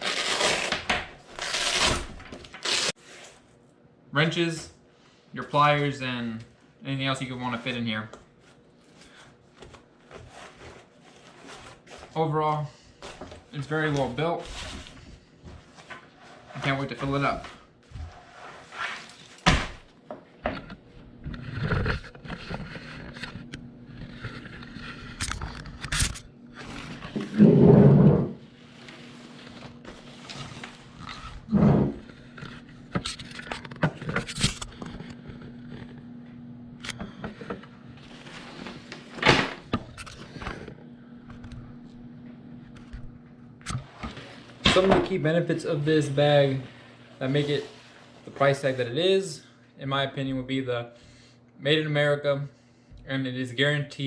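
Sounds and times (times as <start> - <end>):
faint steady hum: 0.0 - 54.0
fabric roll scrapes and rustles: 8.4 - 12.2, 13.0 - 19.4, 26.5 - 32.7, 37.9 - 39.2, 45.7 - 48.8.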